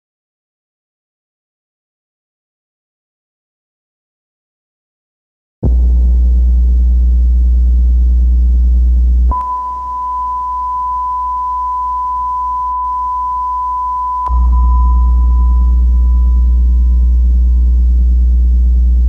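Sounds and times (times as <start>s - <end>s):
deep low drone: 5.6s - 19.0s
steady high alert beep: 9.3s - 17.6s.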